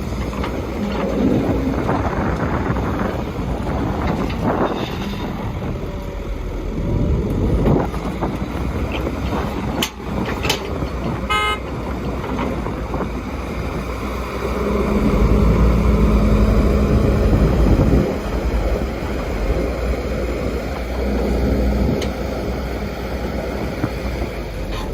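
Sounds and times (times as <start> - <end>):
construction machinery engines rumbling: 0.0 - 24.9
short horn toot: 11.3 - 11.6.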